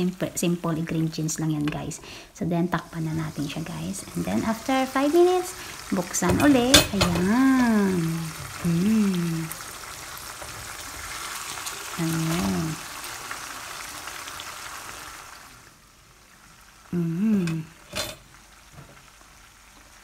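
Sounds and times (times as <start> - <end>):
food sizzling in a frying pan: 0.0 - 20.0
person humming: 7.2 - 9.6, 12.0 - 12.8, 16.9 - 17.8.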